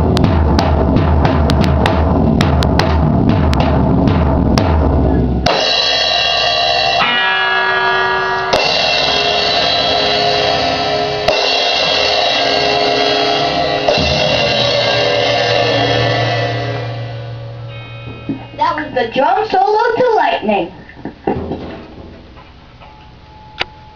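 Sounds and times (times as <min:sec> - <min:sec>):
bass drum and drum hits: 0:00.0 - 0:07.3, 0:08.0 - 0:18.6, 0:21.2 - 0:22.9
cymbal crashes ringing: 0:05.4 - 0:19.1.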